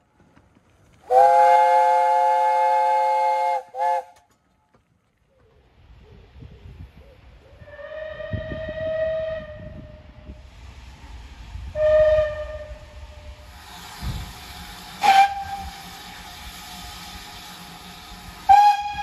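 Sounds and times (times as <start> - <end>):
steam locomotive whistle blasts: 1.1 - 4.2, 7.6 - 10.1, 11.7 - 19.0.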